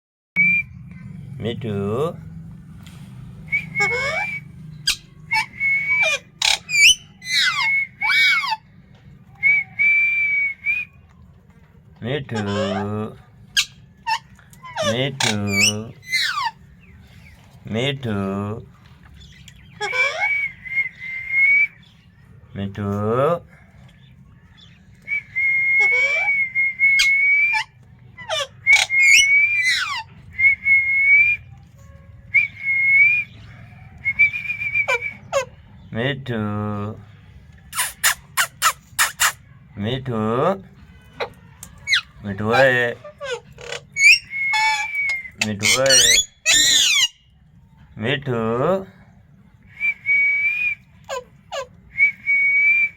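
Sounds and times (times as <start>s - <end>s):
parrot whistling: 3.5s - 8.6s, 12.4s - 12.9s, 13.6s - 16.6s, 19.6s - 21.8s, 25.1s - 31.5s, 34.0s - 35.5s, 41.2s - 47.2s, 49.7s - 52.9s
parrot chirps stepping down: 43.6s - 47.1s.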